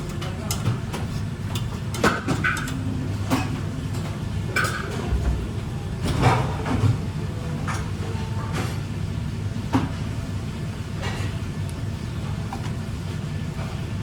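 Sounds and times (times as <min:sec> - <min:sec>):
dishes and utensils clinking: 0:00.0 - 0:05.4.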